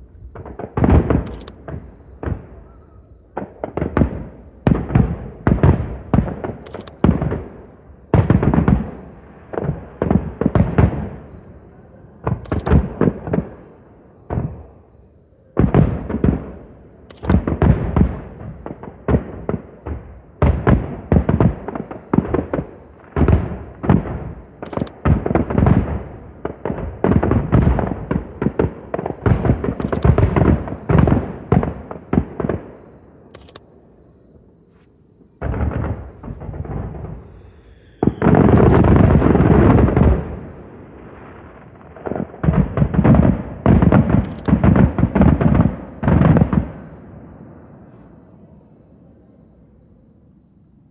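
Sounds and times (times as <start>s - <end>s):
firework shells bursting: 0.4s - 2.7s, 12.5s - 14.6s, 16.0s - 20.2s, 21.7s - 26.8s, 29.1s - 33.7s, 35.5s - 40.6s, 44.1s - 44.8s.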